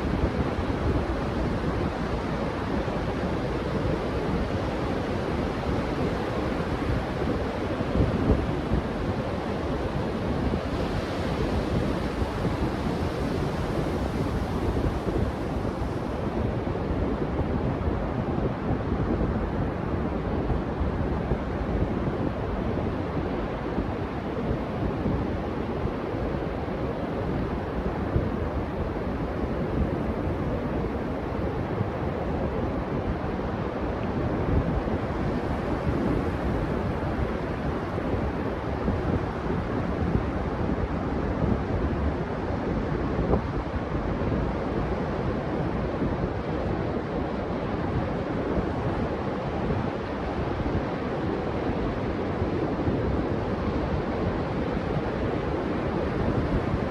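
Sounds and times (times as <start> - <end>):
wind buffeting microphone: 6.0 - 42.5
ocean surf washing onto beach: 21.4 - 40.3.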